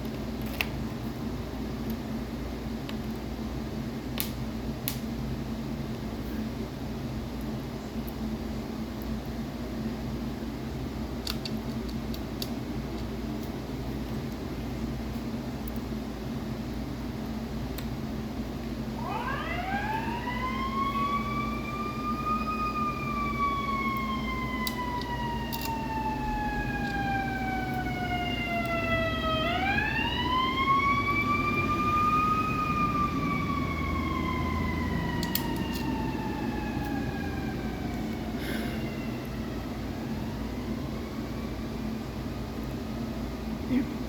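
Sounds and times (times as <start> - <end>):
steady low hum: 0.0 - 44.0
emergency vehicle siren wailing: 18.9 - 43.1.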